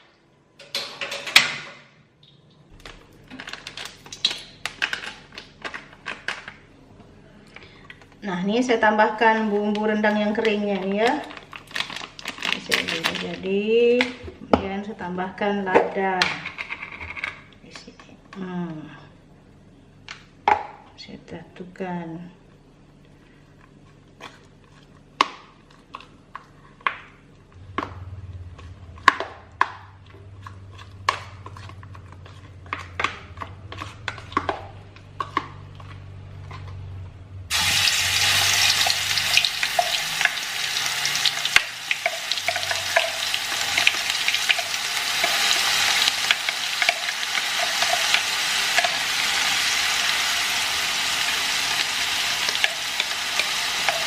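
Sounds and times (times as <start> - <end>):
spice paste sizzling in oil: 37.5 - 54.0
spoon tapping and scraping pan: 38.8 - 40.4, 41.4 - 49.1.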